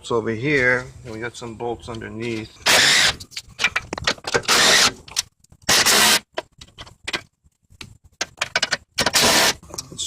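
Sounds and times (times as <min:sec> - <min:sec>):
power tool bursts: 0:02.6 - 0:03.2, 0:04.5 - 0:04.9, 0:05.7 - 0:06.2, 0:09.0 - 0:09.6
clicks and clatter: 0:06.4 - 0:09.2.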